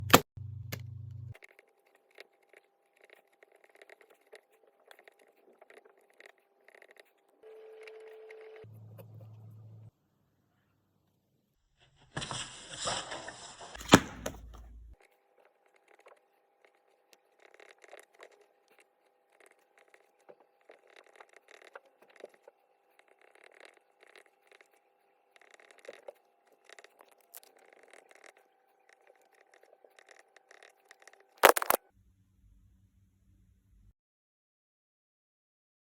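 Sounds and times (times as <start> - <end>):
pencil scratching on paper: 1.4 - 9.3, 15.0 - 31.2.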